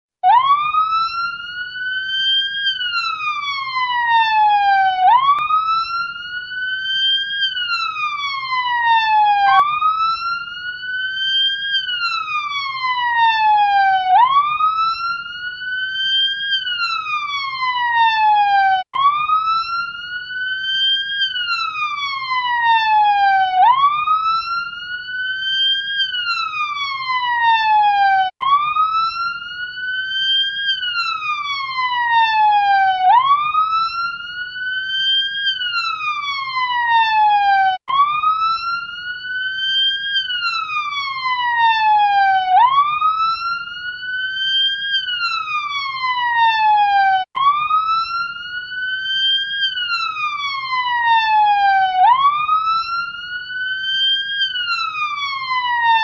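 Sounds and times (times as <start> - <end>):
ambulance siren wailing: 0.2 - 56.0.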